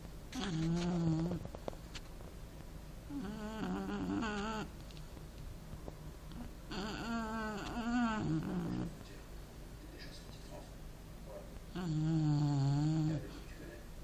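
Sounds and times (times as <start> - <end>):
person snoring: 11.8 - 13.4.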